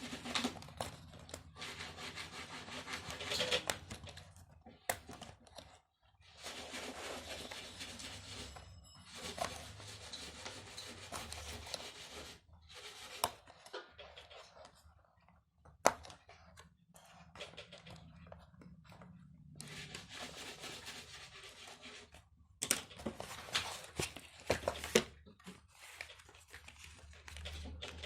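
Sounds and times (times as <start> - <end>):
toy packaging being handled: 0.0 - 8.5, 22.6 - 28.0.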